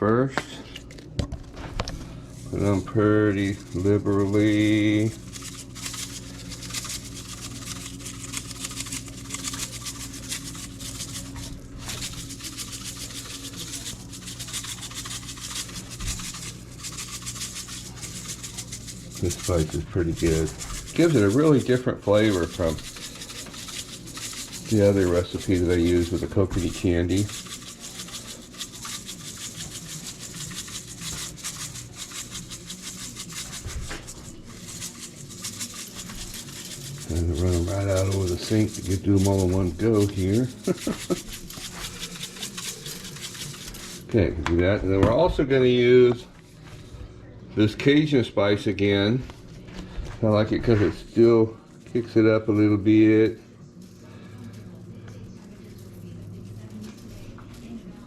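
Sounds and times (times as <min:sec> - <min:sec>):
steady low hum: 0:00.0 - 0:58.0
spice shaker rattling: 0:02.6 - 0:44.1.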